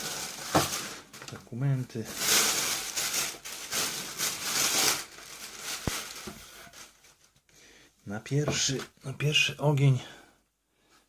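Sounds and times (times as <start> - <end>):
packaging rustling and crinkling: 0.0 - 7.4.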